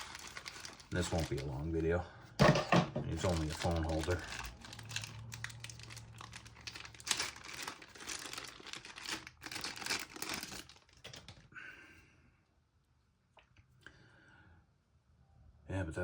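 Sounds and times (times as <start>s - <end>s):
packaging crinkling and rustling: 0.0s - 1.8s, 3.1s - 11.5s.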